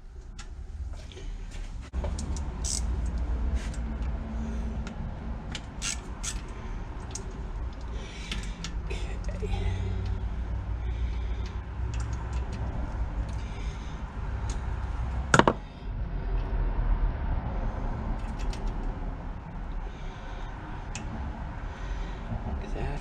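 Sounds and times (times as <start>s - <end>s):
tools and parts clicking: 2.0s - 4.1s, 4.8s - 8.8s.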